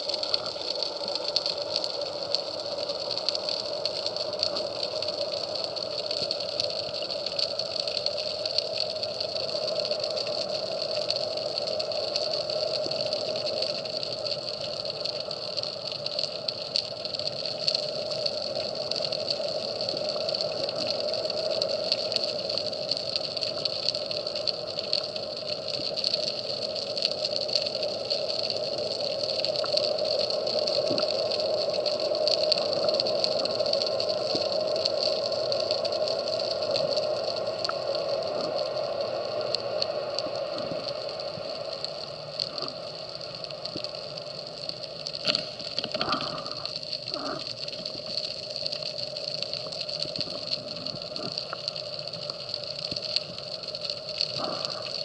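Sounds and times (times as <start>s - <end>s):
faint clicks and crackles: 0.0s - 55.0s
underwater droning hum: 0.0s - 55.0s.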